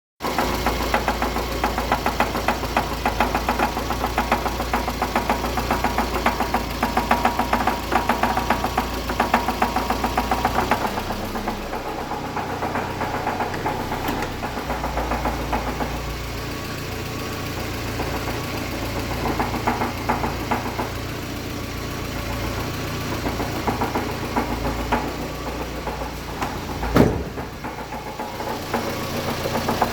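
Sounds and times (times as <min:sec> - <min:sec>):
car engine idling: 0:00.2 - 0:29.9
rhythmic rattling knock: 0:00.9 - 0:17.0, 0:17.6 - 0:29.9
loud thump: 0:26.4 - 0:28.2.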